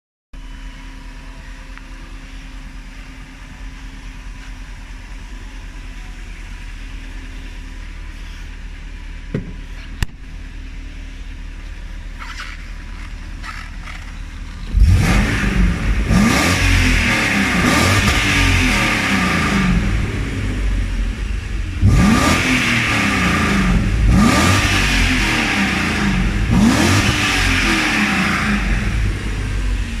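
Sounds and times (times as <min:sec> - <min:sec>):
car engine idling: 0:00.4 - 0:30.0
engine revving in throttle blips: 0:12.1 - 0:30.0.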